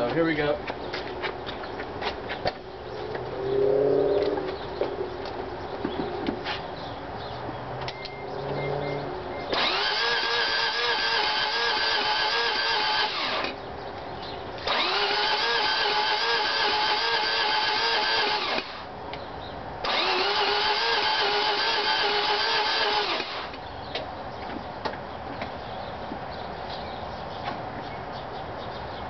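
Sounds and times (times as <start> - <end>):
engine starter cranking: 9.5 - 13.6, 14.6 - 18.9, 19.8 - 23.6
whine of starter: 9.5 - 13.6, 14.6 - 18.9, 19.8 - 23.6.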